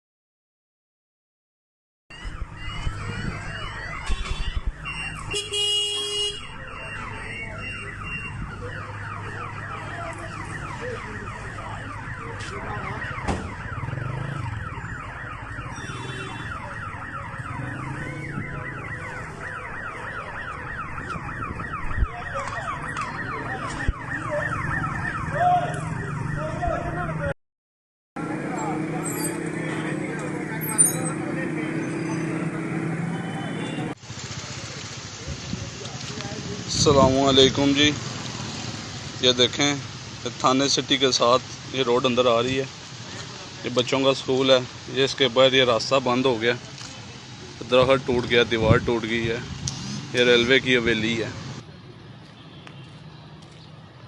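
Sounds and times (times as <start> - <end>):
car alarm whooping: 2.1 - 26.7.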